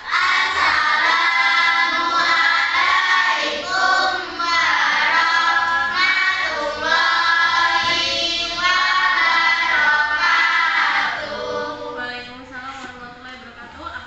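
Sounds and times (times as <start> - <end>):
children singing: 0.0 - 12.2.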